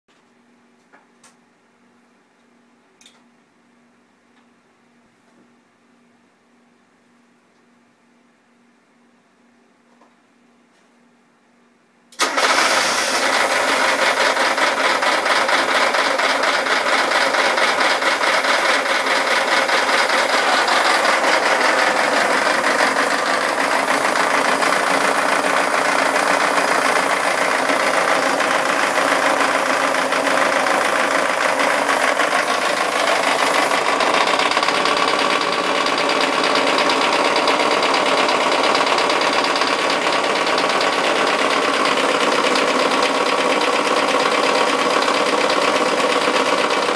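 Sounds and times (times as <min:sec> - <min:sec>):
car engine knocking: 0:13.1 - 0:46.9.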